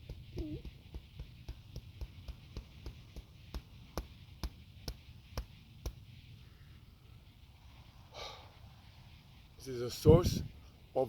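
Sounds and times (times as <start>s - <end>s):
hands tapping on body: 0.0s - 6.0s.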